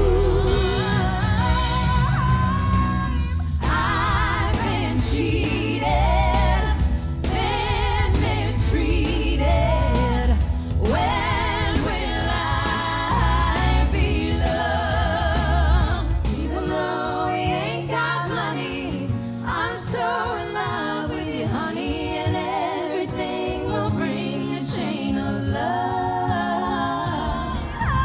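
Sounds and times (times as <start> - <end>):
band drums and bass: 0.0 - 16.8
voices singing together: 0.0 - 28.0.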